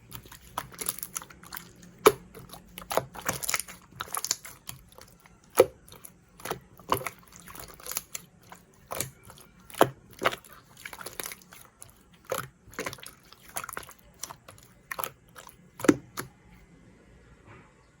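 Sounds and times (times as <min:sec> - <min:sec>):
slime squished by hand: 0:00.0 - 0:16.4.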